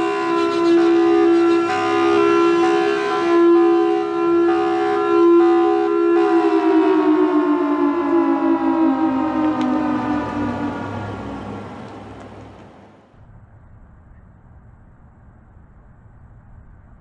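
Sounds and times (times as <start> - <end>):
siren wail winding down: 0.0 - 12.9.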